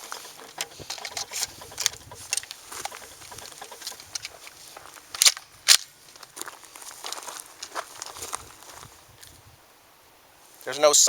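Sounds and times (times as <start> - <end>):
sharp clicks: 0.0 - 5.9
handling clicks and rustles: 0.0 - 9.4.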